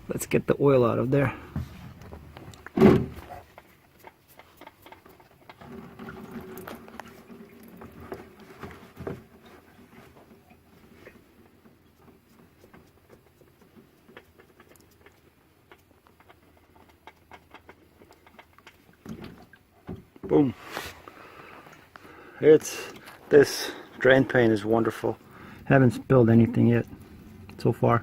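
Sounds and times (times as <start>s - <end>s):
thump: 2.8s - 3.2s.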